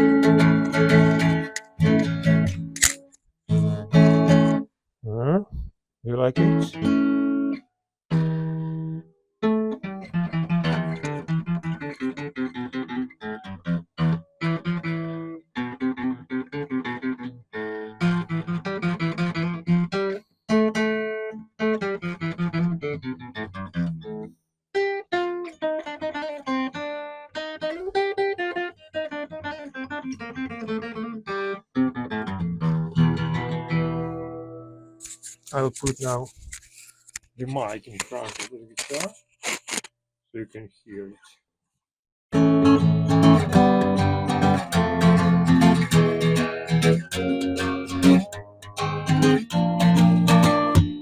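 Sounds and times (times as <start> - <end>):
acoustic guitar picking: 0.0 - 4.6, 6.4 - 8.6, 9.4 - 20.1, 25.2 - 39.8, 42.4 - 51.0.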